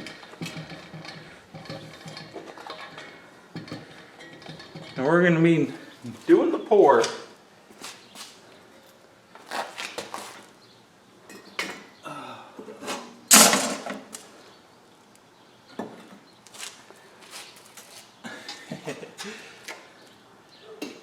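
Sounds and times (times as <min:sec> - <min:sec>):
metal clinks and knocks: 0:00.0 - 0:05.0.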